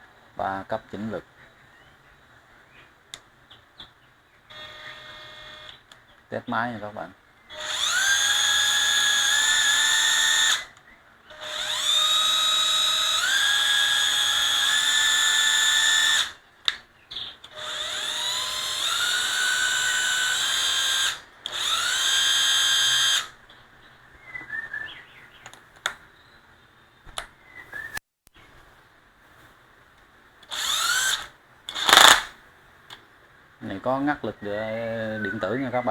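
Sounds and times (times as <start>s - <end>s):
cordless drill motor whine: 4.5s - 5.8s, 7.5s - 16.4s, 17.5s - 23.3s, 30.4s - 32.3s.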